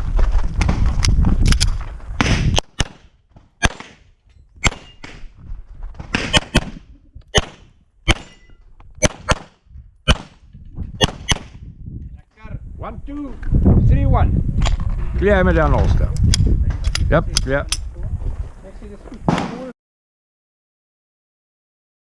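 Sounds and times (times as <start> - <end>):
pistol shots: 2.2 - 5.2, 6.1 - 10.4, 11.0 - 11.6.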